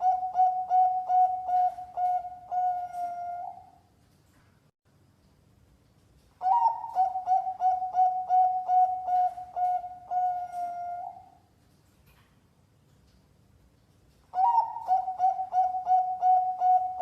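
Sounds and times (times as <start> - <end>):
dove cooing: 0.0 - 3.8, 6.4 - 11.4, 14.3 - 17.0.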